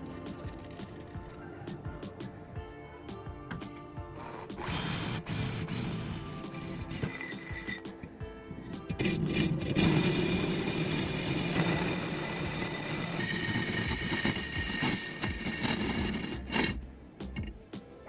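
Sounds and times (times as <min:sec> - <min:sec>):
power tool running: 0:03.7 - 0:07.9, 0:08.8 - 0:16.8.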